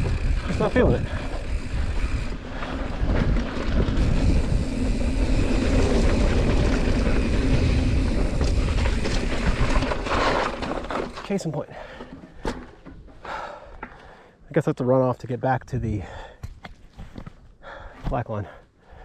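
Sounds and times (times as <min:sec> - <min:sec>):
wind rushing over microphone: 0:00.0 - 0:10.0
bike tyres rumbling on dirt trail: 0:00.0 - 0:13.9.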